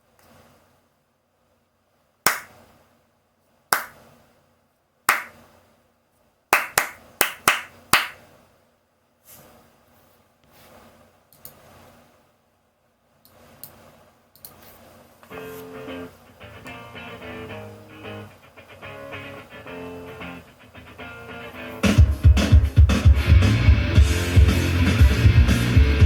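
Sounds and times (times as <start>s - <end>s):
hand claps: 2.3s - 2.6s, 3.7s - 4.0s, 5.1s - 5.4s, 6.5s - 8.2s.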